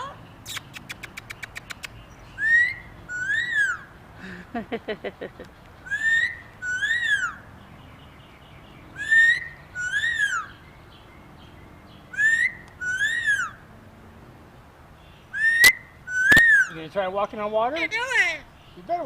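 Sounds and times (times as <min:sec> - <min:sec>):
parrot wolf whistling: 0:02.4 - 0:03.8, 0:05.9 - 0:07.4, 0:09.0 - 0:10.5, 0:12.1 - 0:13.6, 0:15.3 - 0:16.8.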